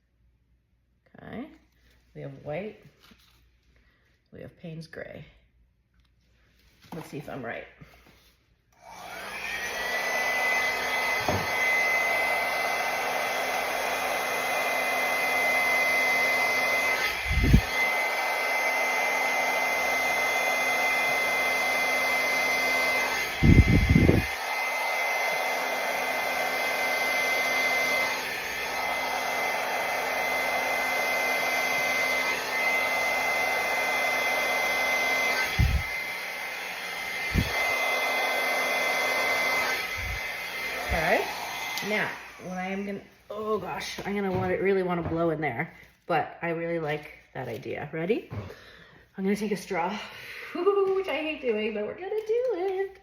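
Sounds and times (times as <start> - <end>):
hair dryer whine and air rush: 8.7 - 45.2, 49.3 - 51.8.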